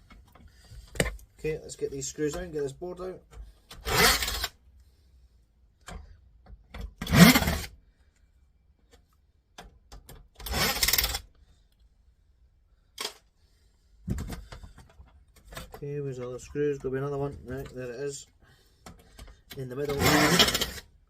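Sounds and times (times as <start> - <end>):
screwdriver scraping screws: 3.7 - 4.6, 7.0 - 7.7, 10.4 - 11.3, 19.2 - 20.9.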